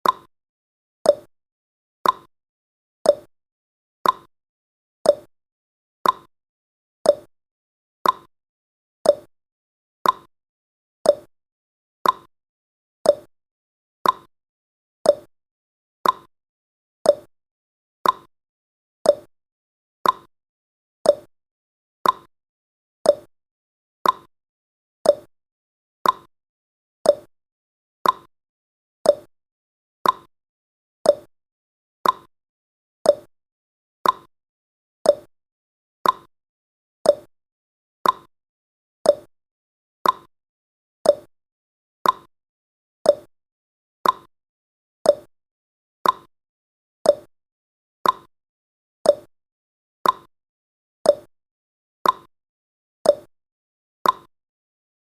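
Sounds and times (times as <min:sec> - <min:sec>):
timer ticking: 0:00.0 - 0:00.3, 0:01.1 - 0:01.3, 0:02.0 - 0:02.3, 0:03.1 - 0:03.3, 0:04.0 - 0:04.3, 0:05.1 - 0:05.3, 0:06.0 - 0:06.3, 0:07.1 - 0:07.3, 0:08.0 - 0:08.3, 0:09.1 - 0:09.3, 0:10.0 - 0:10.3, 0:11.1 - 0:11.3, 0:12.0 - 0:12.3, 0:13.1 - 0:13.3, 0:14.0 - 0:14.3, 0:15.1 - 0:15.3, 0:16.0 - 0:16.3, 0:17.1 - 0:17.3, 0:18.0 - 0:18.3, 0:19.1 - 0:19.3, 0:20.0 - 0:20.3, 0:21.0 - 0:21.3, 0:22.0 - 0:22.3, 0:23.0 - 0:23.3, 0:24.0 - 0:24.3, 0:25.0 - 0:25.3, 0:26.0 - 0:26.3, 0:27.0 - 0:27.3, 0:28.0 - 0:28.3, 0:29.0 - 0:29.3, 0:30.0 - 0:30.3, 0:31.0 - 0:31.3, 0:32.0 - 0:32.3, 0:33.1 - 0:33.3, 0:34.0 - 0:34.3, 0:35.1 - 0:35.3, 0:36.0 - 0:36.3, 0:37.1 - 0:37.3, 0:38.0 - 0:38.3, 0:39.1 - 0:39.3, 0:40.0 - 0:40.3, 0:41.0 - 0:41.3, 0:42.0 - 0:42.3, 0:43.1 - 0:43.3, 0:44.0 - 0:44.3, 0:45.1 - 0:45.3, 0:46.0 - 0:46.3, 0:47.1 - 0:47.3, 0:48.0 - 0:48.3, 0:49.1 - 0:49.3, 0:50.0 - 0:50.3, 0:51.1 - 0:51.3, 0:52.0 - 0:52.3, 0:53.1 - 0:53.3, 0:54.0 - 0:54.3.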